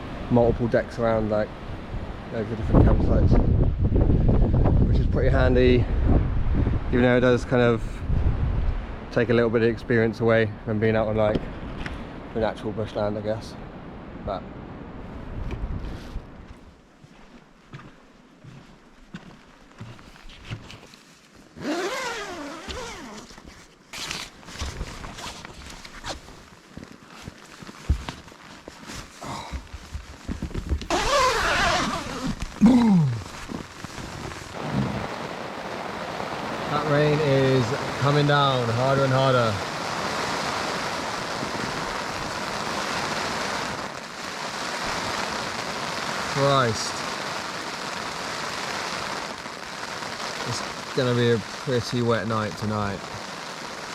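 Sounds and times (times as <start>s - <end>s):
heavy rain falling: 27.2s - 53.9s.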